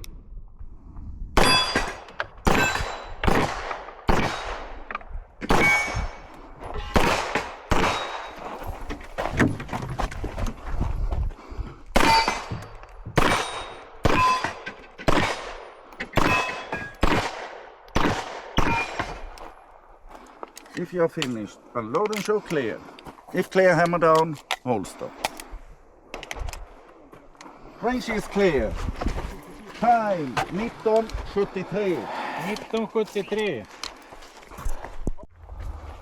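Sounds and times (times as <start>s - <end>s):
steel targets clanging: 1.4s - 3.2s, 5.5s - 6.3s, 12.0s - 17.0s, 18.6s - 19.2s
pistol shots: 1.4s - 6.3s, 6.9s - 8.5s, 12.0s - 12.6s, 13.2s - 19.4s.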